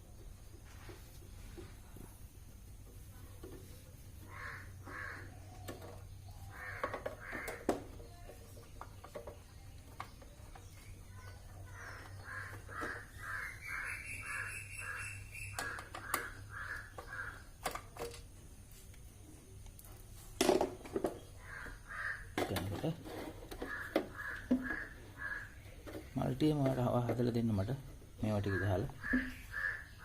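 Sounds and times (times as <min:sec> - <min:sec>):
crow cawing: 0:04.2 - 0:05.4, 0:06.5 - 0:07.8, 0:11.8 - 0:17.5, 0:21.4 - 0:22.4, 0:23.6 - 0:25.6, 0:28.5 - 0:30.0.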